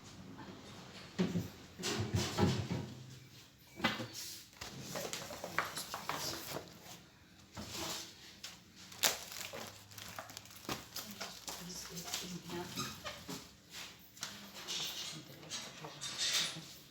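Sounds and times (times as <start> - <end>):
fridge shelves rubbing and rattling: 1.2 - 3.1.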